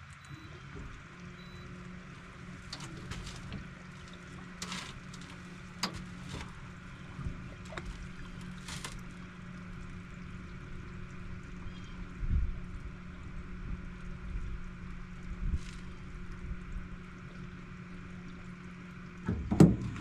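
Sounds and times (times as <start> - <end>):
river water splashing: 0.0 - 11.8
low steady hum: 0.0 - 20.0.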